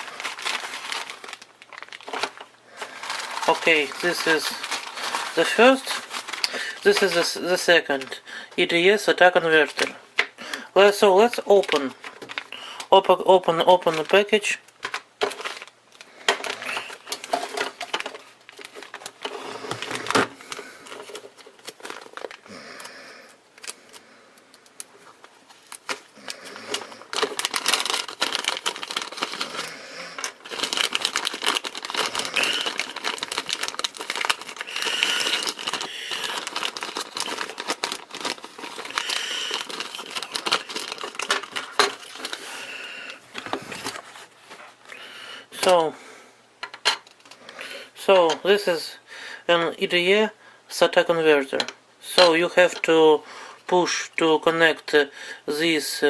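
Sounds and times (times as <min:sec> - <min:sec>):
packaging crinkling and tearing: 0:00.0 - 0:08.2, 0:09.1 - 0:45.0.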